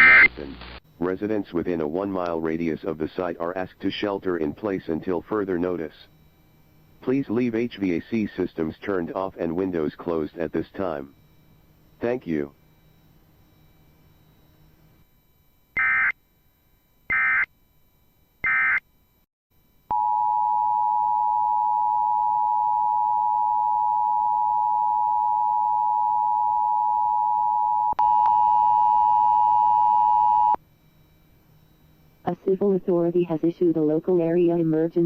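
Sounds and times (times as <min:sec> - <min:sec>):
warbling data bursts: 0:00.0 - 0:11.4.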